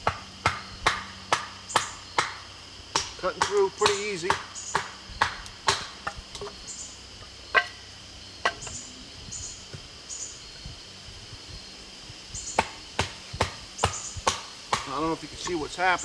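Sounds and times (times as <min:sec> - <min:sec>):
insects chirping: 0:00.0 - 0:16.0
knife striking wood: 0:03.0 - 0:06.6, 0:08.4 - 0:08.8.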